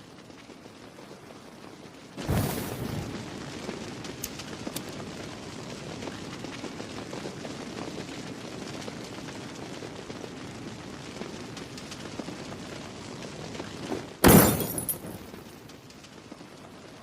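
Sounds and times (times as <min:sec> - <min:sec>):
flame bursting: 0:00.0 - 0:17.0
small clicks: 0:04.2 - 0:05.0
glass bottle shattering: 0:14.2 - 0:15.3.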